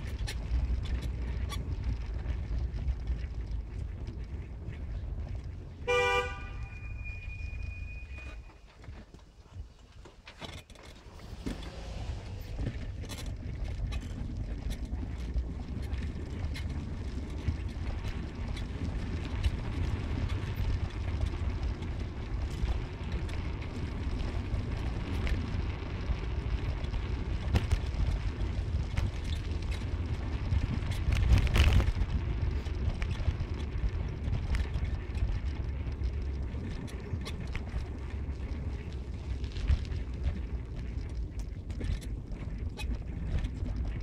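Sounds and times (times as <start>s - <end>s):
car road and engine rumble: 0.0s - 44.0s.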